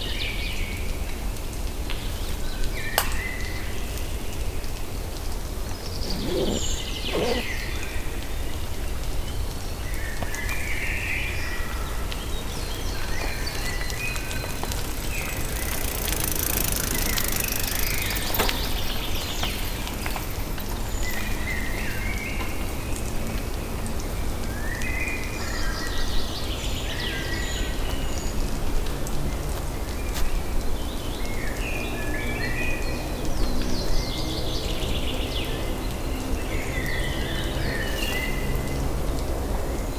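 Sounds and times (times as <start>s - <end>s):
small birds chirping: 5.9s - 7.6s, 12.7s - 20.5s.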